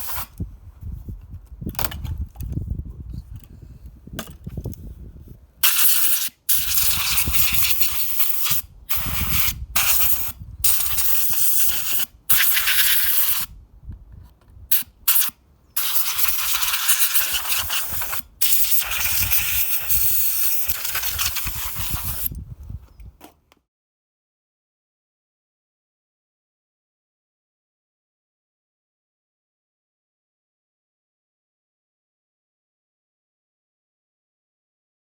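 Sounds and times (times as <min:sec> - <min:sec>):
compressed air hissing blasts: 0:00.0 - 0:00.4, 0:05.6 - 0:13.5, 0:14.7 - 0:22.4.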